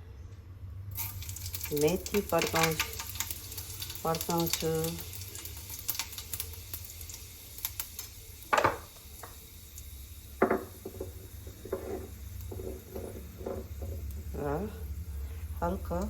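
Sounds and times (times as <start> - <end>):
seeds sizzling in hot oil: 0.9 - 16.0
utensil stirring against pan: 1.0 - 16.0.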